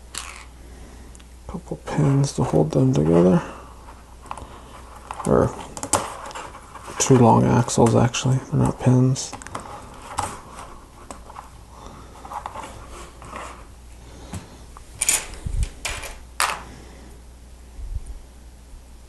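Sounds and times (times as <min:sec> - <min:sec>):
plastic parts rattling: 0:00.0 - 0:00.5, 0:03.0 - 0:11.5, 0:15.0 - 0:16.7
plastic parts clicking together: 0:00.1 - 0:00.5.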